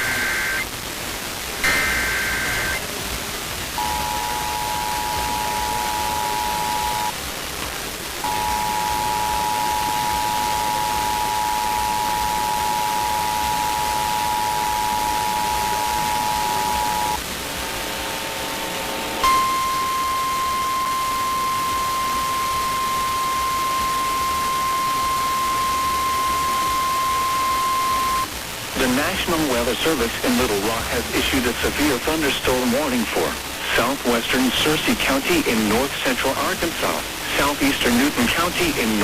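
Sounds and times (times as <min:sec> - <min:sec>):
data burst tones: 0:00.0 - 0:00.7, 0:01.6 - 0:02.9, 0:03.7 - 0:07.2, 0:08.2 - 0:17.2, 0:19.2 - 0:39.0
radio static hiss: 0:00.0 - 0:39.0
two-tone attention signal: 0:01.6 - 0:02.8, 0:03.8 - 0:07.2, 0:08.2 - 0:17.2, 0:19.2 - 0:28.3.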